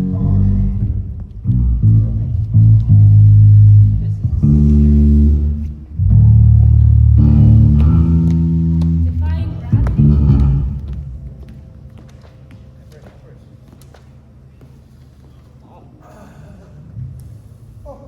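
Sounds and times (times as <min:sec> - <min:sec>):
bass guitar low notes: 0:00.0 - 0:11.8
guitar chords: 0:00.0 - 0:12.0.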